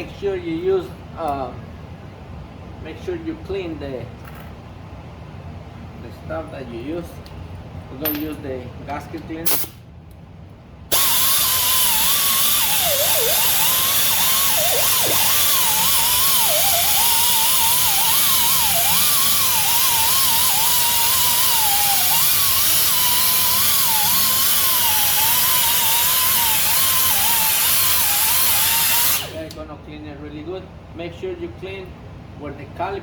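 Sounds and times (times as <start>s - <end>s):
rotary power tool whining: 10.9s - 29.6s.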